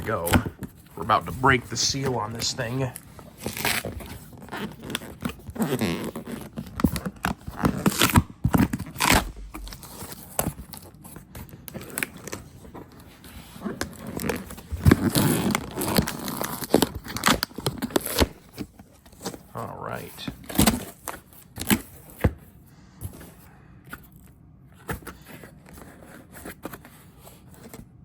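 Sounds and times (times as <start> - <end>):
packaging crinkling and scraping: 0.0 - 22.2, 23.9 - 27.9
cardboard box tearing open: 3.4 - 10.4, 14.0 - 18.6.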